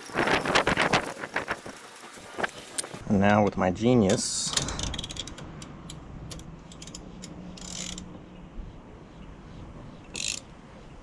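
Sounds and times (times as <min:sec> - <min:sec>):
short rustle: 0:00.0 - 0:03.0.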